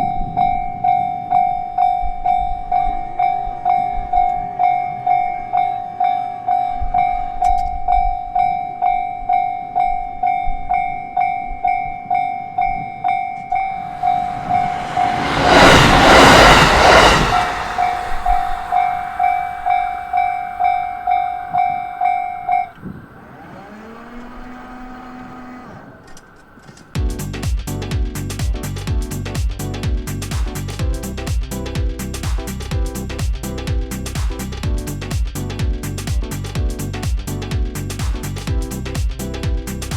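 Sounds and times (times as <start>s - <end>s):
level-crossing bell dinging: 0.1s - 14.7s, 18.7s - 22.8s
train rushing past: 13.5s - 22.8s
faint rising hum: 13.6s - 22.0s.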